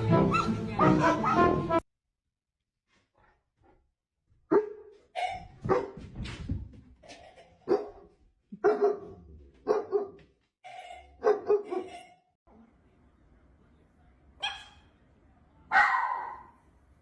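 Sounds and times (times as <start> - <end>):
dog barking: 0.3 - 1.6, 4.5 - 6.0, 7.6 - 10.2, 11.0 - 12.2, 14.4 - 14.9, 15.7 - 16.6.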